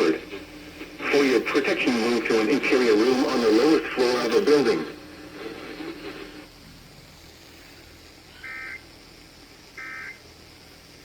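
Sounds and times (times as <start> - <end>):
faint hiss: 0.0 - 11.0
digital data tone bursts: 8.3 - 8.9, 9.7 - 10.3.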